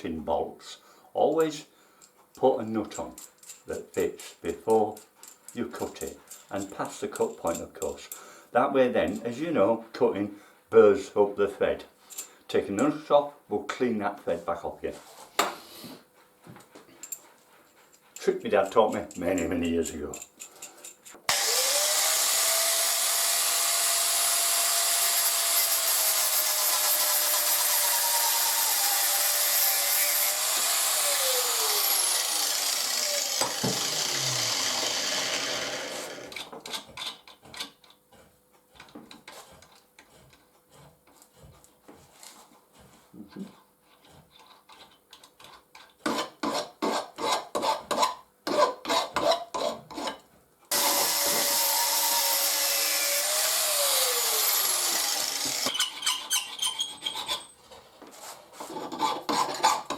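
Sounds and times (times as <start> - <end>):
electric tool cutting steel: 21.3 - 36.5, 50.7 - 57.5.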